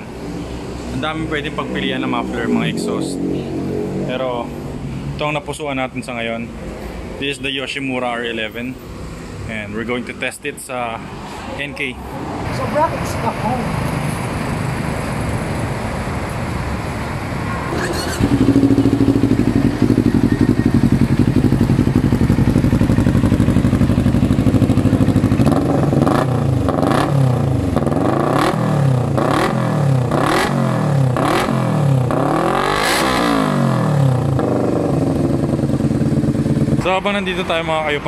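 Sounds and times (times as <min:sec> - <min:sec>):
motorcycle engine idling and revving: 0:00.0 - 0:09.7, 0:17.7 - 0:38.0.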